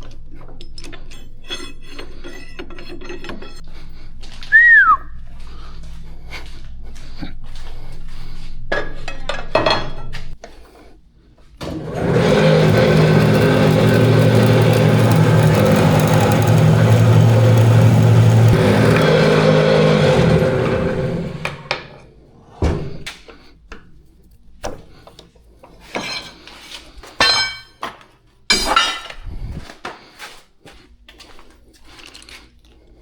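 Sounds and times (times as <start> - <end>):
machine motor running: 11.6 - 22.1
metal tools clinking: 27.2 - 27.8.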